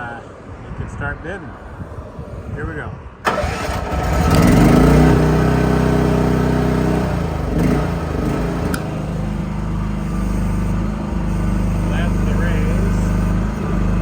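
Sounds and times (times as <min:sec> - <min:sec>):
excavator engine running: 0:03.3 - 0:14.0
sharp click: 0:08.7 - 0:08.9.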